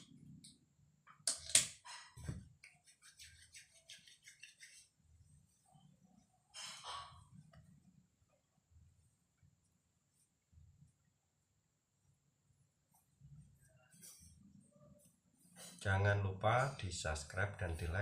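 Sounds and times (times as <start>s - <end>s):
hands stroking skin: 2.6s - 4.9s.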